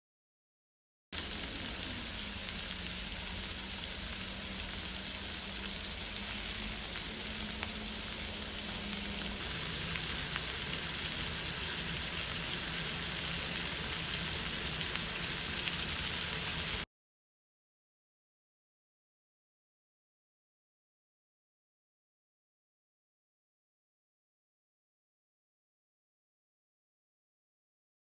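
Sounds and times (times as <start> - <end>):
food sizzling in frying pan: 1.2 - 16.9.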